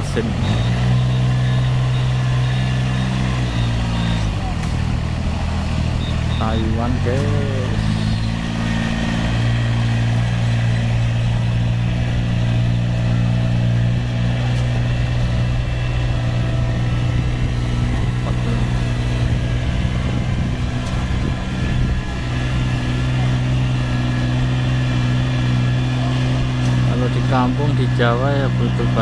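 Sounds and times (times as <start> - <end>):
machine engine running: 0.0 - 29.0.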